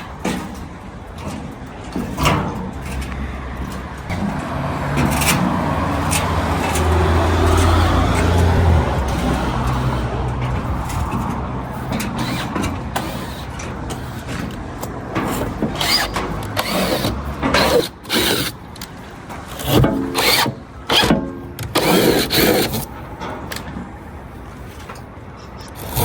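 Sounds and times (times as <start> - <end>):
low engine rumble: 0.0 - 17.5.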